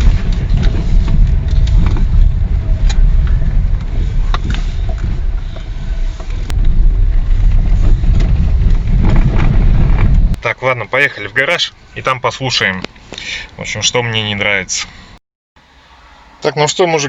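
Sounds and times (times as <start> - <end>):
road rumble inside car: 0.0 - 10.6.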